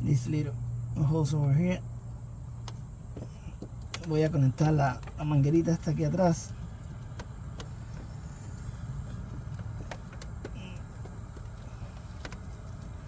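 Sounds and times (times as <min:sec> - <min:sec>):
steady low hum: 0:00.0 - 0:13.0
faint clicks and taps of hands: 0:09.2 - 0:12.9.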